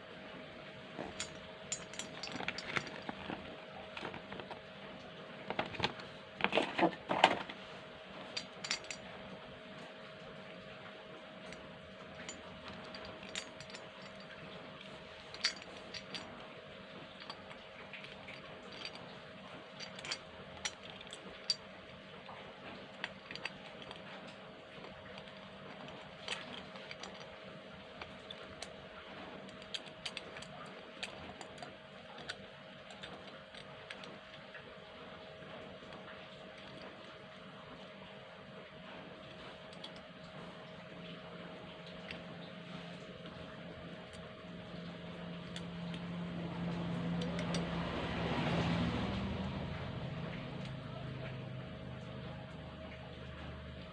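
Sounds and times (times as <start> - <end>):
faint steady hum: 0.0 - 53.9
small hard parts clicking: 1.0 - 4.6, 8.2 - 9.0, 11.4 - 16.4, 17.0 - 21.7, 22.7 - 27.4, 28.0 - 34.4, 45.4 - 47.9.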